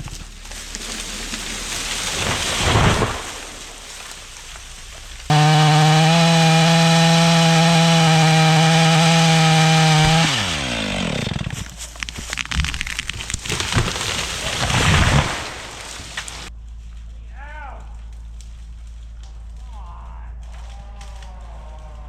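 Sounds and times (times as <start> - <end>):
chainsaw engine revving: 5.3 - 16.5
sharp cracks and snaps: 10.9 - 17.1.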